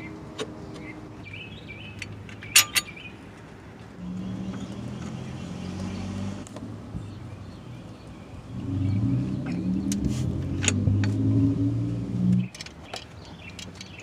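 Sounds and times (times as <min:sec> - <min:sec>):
birds chirping: 0:00.0 - 0:14.0
sharp metallic clicks: 0:01.9 - 0:03.0.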